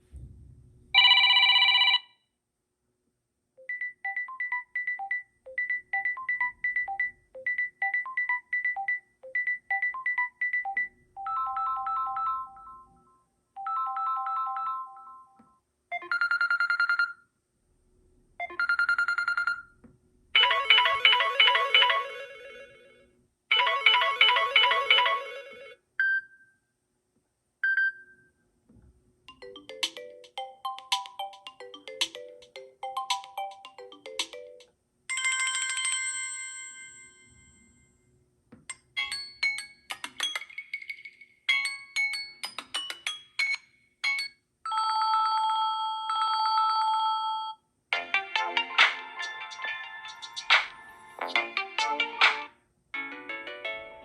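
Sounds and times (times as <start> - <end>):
electronic ringtone melodies: 3.6 - 17.2, 18.4 - 19.6, 20.4 - 22.8, 23.5 - 25.8, 29.3 - 37.4, 39.0 - 52.3
light tinkling tune: 29.3 - 38.1.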